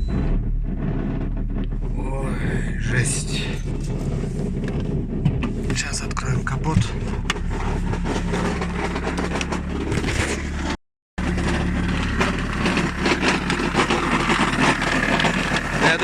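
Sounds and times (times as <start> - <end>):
car engine idling: 0.0 - 16.0
flywheel knocking and rattling: 11.2 - 16.0.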